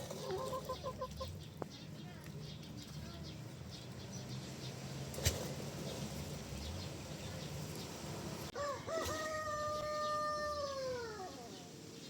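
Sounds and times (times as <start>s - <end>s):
rooster crowing: 8.5s - 11.5s.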